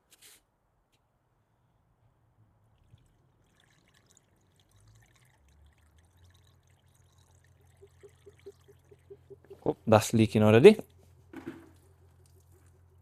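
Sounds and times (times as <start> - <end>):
coolant trickling: 2.6 - 9.7
water pump humming: 2.9 - 13.0.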